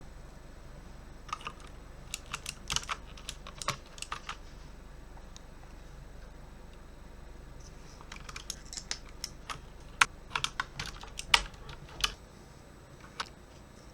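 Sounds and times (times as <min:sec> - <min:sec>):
mechanical keyboard key clicks: 0:01.3 - 0:04.4, 0:08.0 - 0:12.2.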